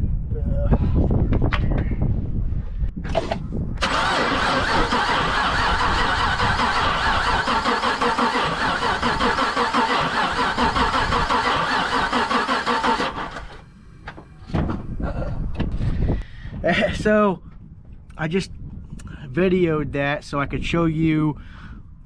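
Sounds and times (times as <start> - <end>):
engine cranking on starter: 3.1 - 13.7.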